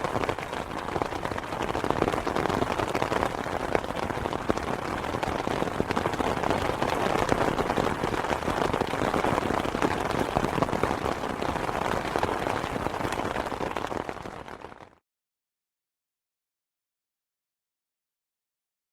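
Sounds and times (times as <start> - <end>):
rain on an umbrella: 0.0 - 15.0.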